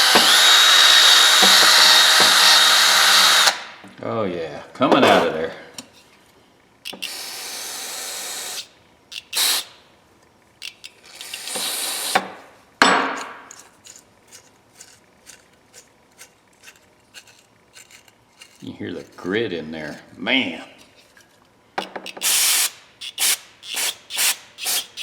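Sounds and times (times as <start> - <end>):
wrench worm screw clicking: 6.8 - 7.4, 8.6 - 9.7, 10.6 - 11.8, 13.2 - 18.7, 21.8 - 25.0
aerosol spray hissing: 7.0 - 9.7, 22.1 - 25.0.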